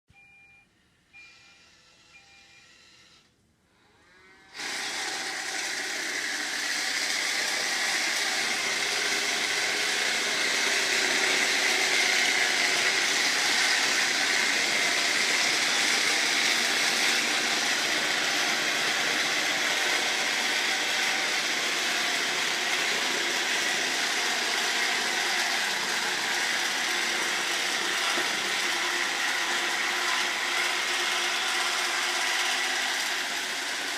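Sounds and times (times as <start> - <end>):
short beeps: 0.1 - 2.8
robot vacuum mechanical noise: 3.9 - 33.9.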